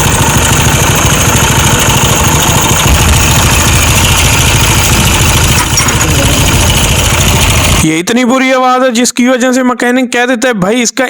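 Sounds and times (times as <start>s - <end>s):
motorcycle engine idling with rattle: 0.0s - 7.9s
person speaking: 5.6s - 7.0s.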